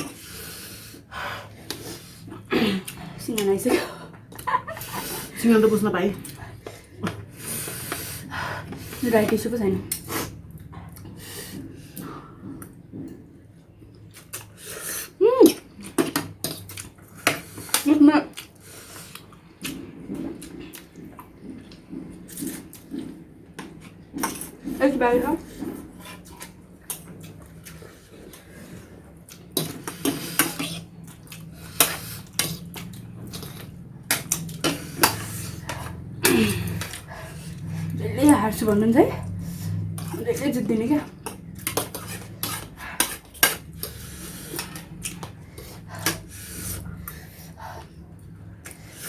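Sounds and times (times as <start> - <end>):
cutlery clinking on a bowl: 41.2 - 44.0.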